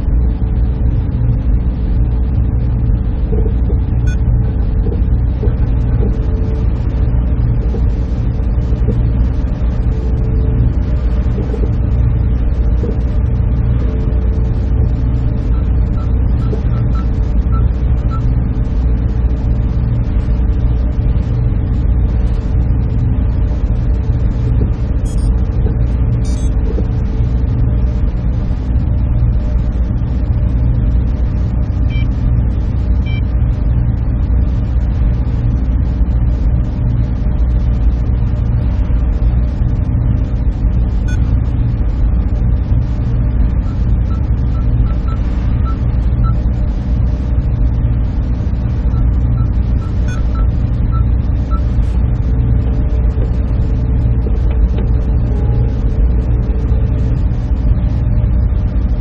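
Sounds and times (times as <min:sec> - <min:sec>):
constant hum: 0:00.0 - 0:59.0
server fans droning: 0:00.0 - 0:59.0
short high beeps: 0:25.1 - 0:25.3, 0:26.2 - 0:26.5, 0:41.1 - 0:41.3, 0:49.4 - 0:51.7.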